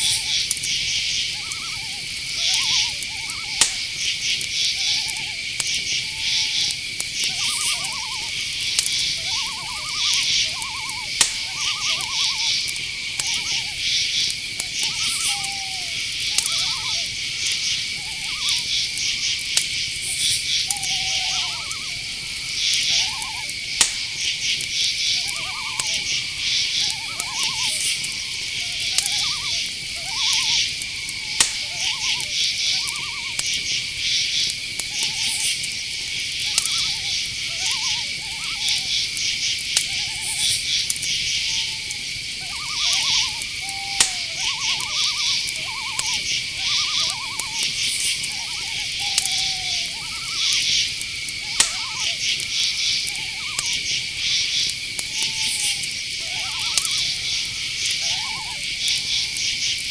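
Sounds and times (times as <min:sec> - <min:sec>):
crickets and insects droning: 0:00.0 - 0:59.9
pulsing insect trills: 0:00.0 - 0:59.9
sharp clicks: 0:02.2 - 0:05.9, 0:06.7 - 0:15.3, 0:21.6 - 0:33.8, 0:38.8 - 0:58.0
short repeated calls: 0:04.8 - 0:18.7, 0:20.2 - 0:39.2, 0:39.9 - 0:59.2.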